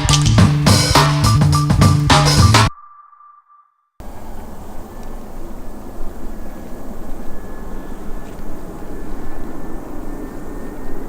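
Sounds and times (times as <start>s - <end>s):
faint high whine: 2.7s - 11.0s
jet engines: 4.0s - 11.0s.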